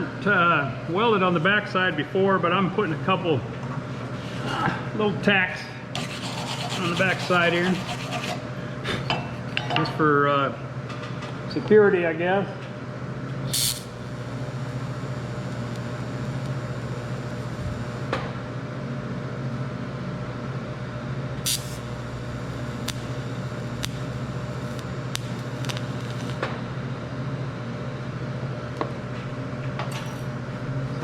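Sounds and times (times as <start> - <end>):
low electrical hum: 0.0 - 31.0
welding arc crackling hiss: 13.5 - 18.1, 21.4 - 26.5
sharp clicks: 23.8 - 26.4.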